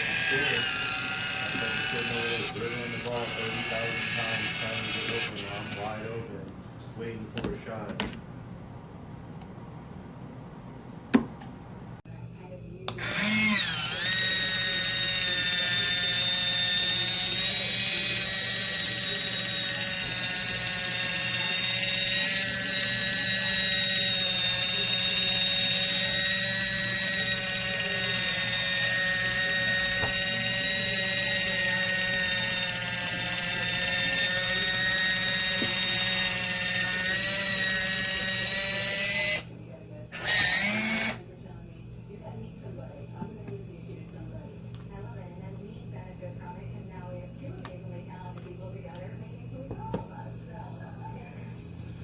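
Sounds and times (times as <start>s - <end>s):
electric can opener whine: 0.0s - 6.3s, 12.9s - 39.5s, 40.1s - 41.2s.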